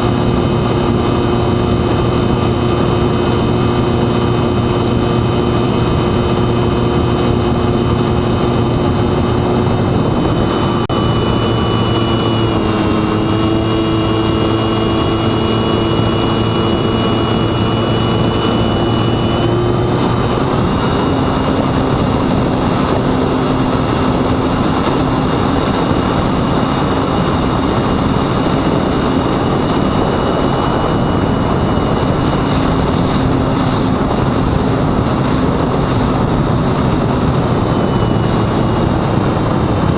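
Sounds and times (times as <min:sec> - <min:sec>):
electric motor whine: 0:00.0 - 0:39.9
wind rush: 0:00.0 - 0:39.9.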